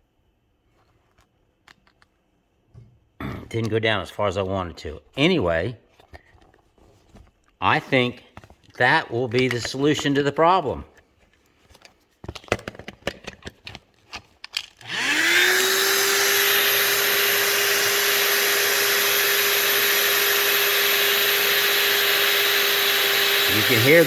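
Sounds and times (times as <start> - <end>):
electric inflation pump humming: 14.9 - 24.0.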